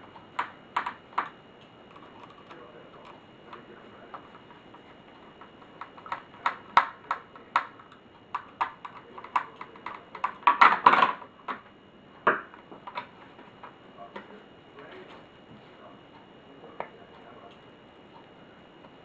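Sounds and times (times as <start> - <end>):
laptop parts clicking and knocking: 0.2 - 3.6, 4.2 - 13.8.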